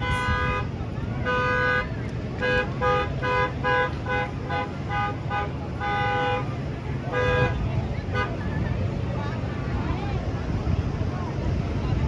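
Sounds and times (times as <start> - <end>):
car horn toots: 0.0 - 6.5, 7.1 - 8.4.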